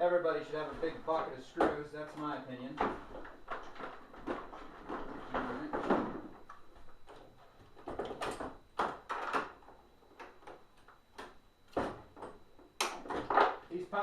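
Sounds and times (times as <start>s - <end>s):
plastic parts clicking and knocking: 5.8s - 13.6s.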